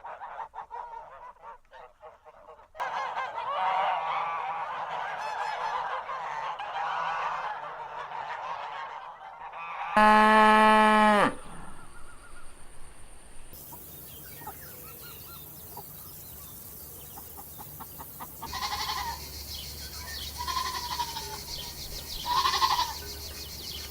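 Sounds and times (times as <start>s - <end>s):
bleat-like animal calls: 10.0s - 11.8s, 18.4s - 19.2s, 20.0s - 23.1s.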